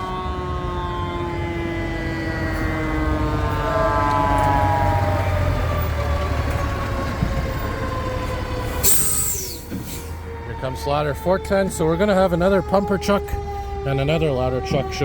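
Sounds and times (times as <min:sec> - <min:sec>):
fire truck siren winding down: 0:00.0 - 0:15.0
truck engine rumble: 0:00.0 - 0:15.0.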